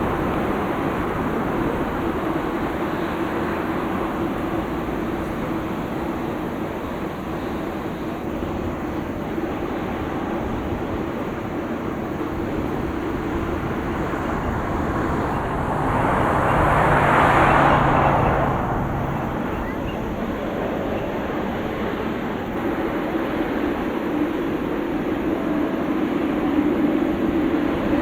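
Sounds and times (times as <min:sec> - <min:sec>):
jet engines idling: 0:00.0 - 0:27.8
louder passing jet: 0:11.9 - 0:21.0.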